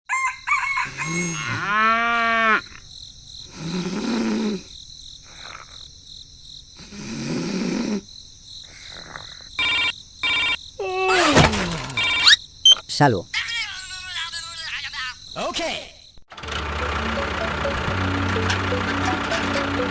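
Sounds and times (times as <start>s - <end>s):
short beeps: 9.6s - 10.6s, 11.8s - 12.8s
drawn-out animal calls: 9.6s - 12.4s, 16.6s - 19.9s.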